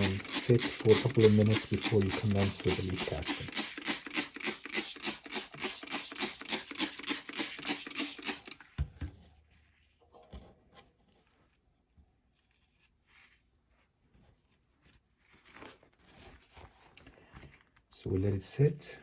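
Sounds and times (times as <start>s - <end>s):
spray bottle hissing sprays: 0.0s - 8.6s.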